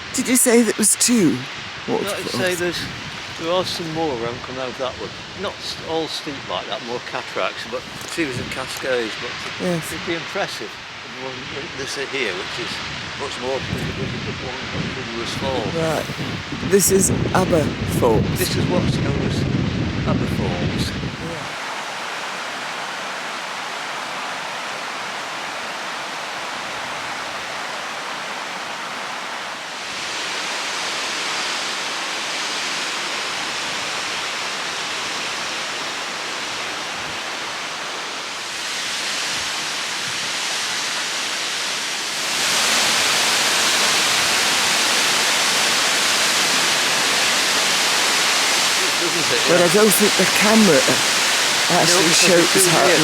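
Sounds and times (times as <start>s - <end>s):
waterfall rushing: 42.1s - 53.0s.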